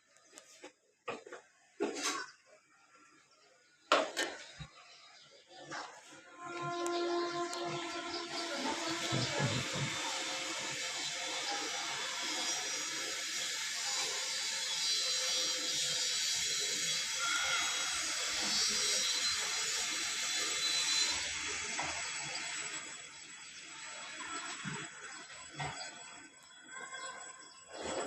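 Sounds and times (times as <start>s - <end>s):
washing machine hissing: 6.7s - 26.3s.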